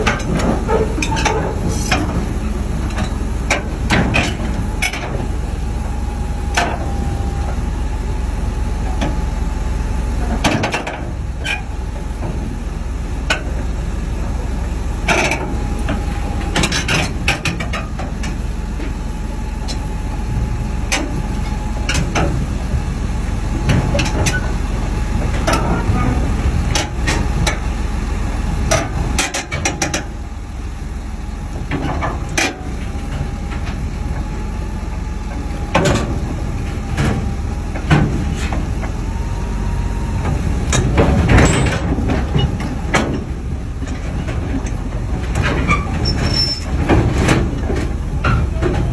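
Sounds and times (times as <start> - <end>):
metal clanks and knocks: 0.0 - 5.2, 40.2 - 48.9
diesel engine running: 0.0 - 48.9
faint engine whine: 0.0 - 48.9.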